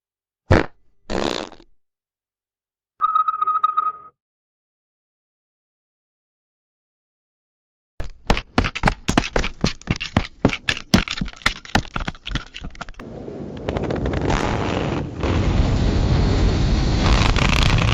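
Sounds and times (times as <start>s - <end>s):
comical fart sounds: 0.5s - 1.8s, 14.0s - 15.4s, 17.0s - 17.9s.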